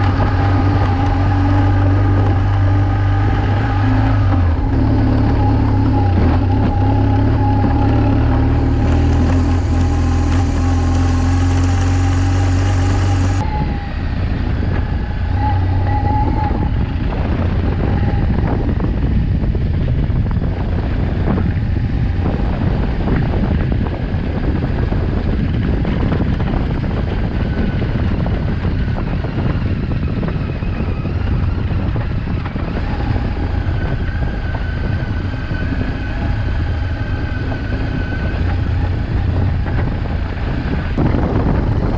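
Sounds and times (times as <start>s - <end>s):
rough rushing noise: 0.0s - 29.9s
motorcycle engine running: 0.0s - 41.9s
wind and road noise: 0.0s - 41.9s.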